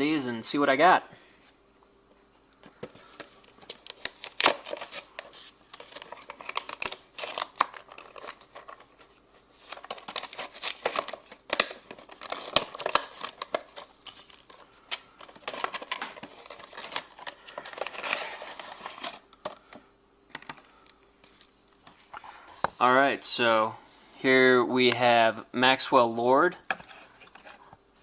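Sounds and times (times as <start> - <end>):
plastic packaging crinkling: 2.7 - 19.7
pack being torn open: 3.5 - 8.8.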